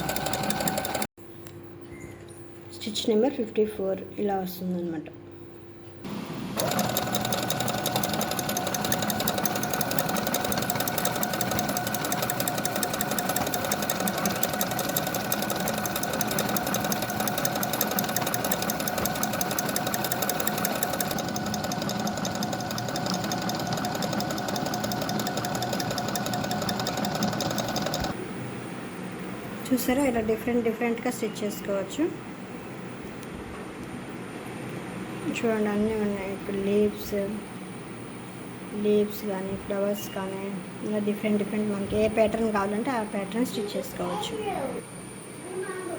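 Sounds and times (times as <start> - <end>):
sewing machine stitching: 0.0 - 1.1, 6.1 - 28.2.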